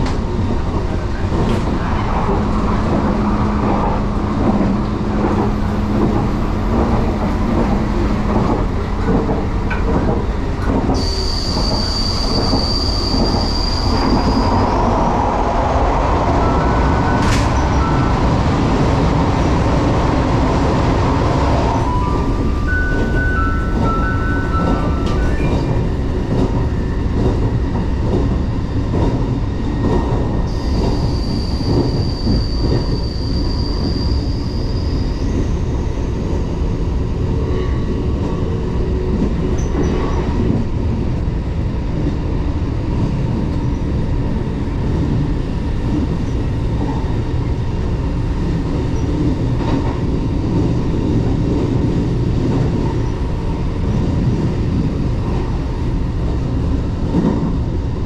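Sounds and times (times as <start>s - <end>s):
train wheels and motors rumbling: 0.0s - 58.0s
high squeal: 11.0s - 15.1s, 30.5s - 36.0s.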